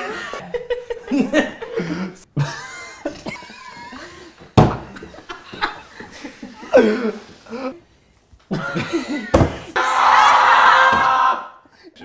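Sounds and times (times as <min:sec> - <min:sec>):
people laughing and wheezing: 0:00.0 - 0:07.8, 0:08.5 - 0:12.0.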